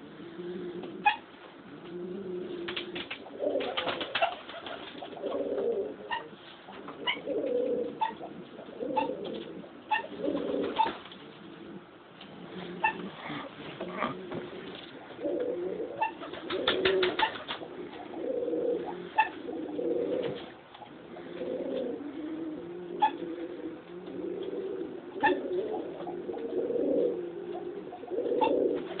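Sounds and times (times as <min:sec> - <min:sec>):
pigeon cooing: 0:00.0 - 0:29.0
pigeon hiccups: 0:01.0 - 0:01.3, 0:08.0 - 0:08.3, 0:09.9 - 0:11.0, 0:12.6 - 0:14.4, 0:15.9 - 0:18.1, 0:18.7 - 0:19.5, 0:23.0 - 0:23.3, 0:25.2 - 0:25.6.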